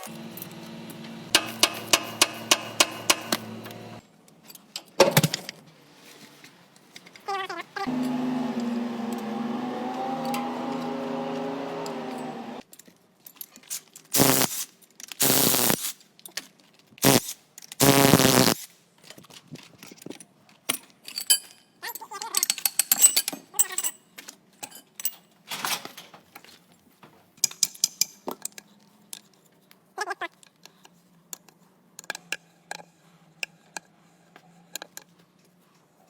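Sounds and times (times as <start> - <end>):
power tool bursts: 0.0 - 4.0, 7.9 - 12.6, 14.2 - 14.5, 15.2 - 15.8, 17.0 - 18.6
metallic clinks and rattles: 19.2 - 25.5.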